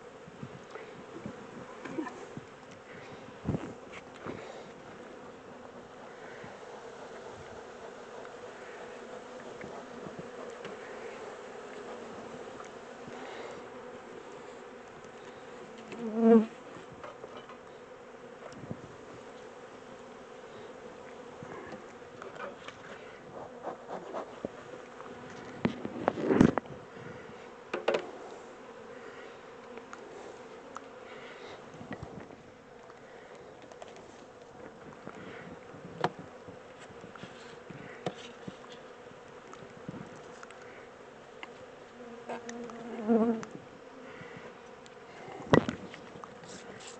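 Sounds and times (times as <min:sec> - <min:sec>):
bees buzzing: 0:00.0 - 0:46.9
hive equipment knocks: 0:27.7 - 0:28.1.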